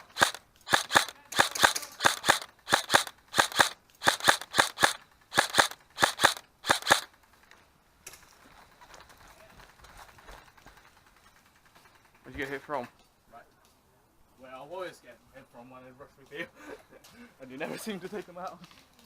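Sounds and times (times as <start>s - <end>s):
airsoft gun shots: 0.0s - 7.1s.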